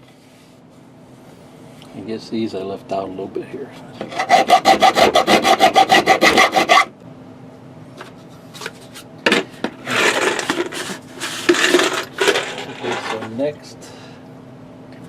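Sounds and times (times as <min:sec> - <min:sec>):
rustling handling noise: 0:07.9 - 0:13.5.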